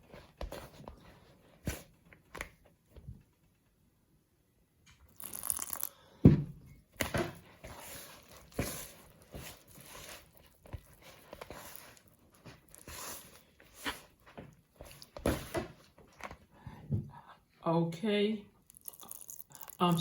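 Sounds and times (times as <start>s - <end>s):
dough mixing scrapes and knocks: 6.9s - 16.4s.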